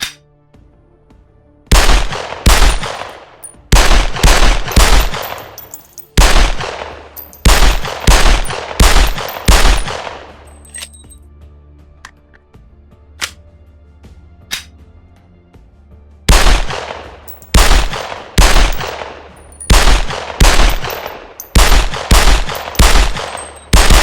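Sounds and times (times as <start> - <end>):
pistol shots with ringing echo: 1.7 - 10.7, 16.3 - 24.0
faint metallic clinks: 4.7 - 6.2, 7.2 - 7.6, 8.4 - 11.2, 22.5 - 23.8.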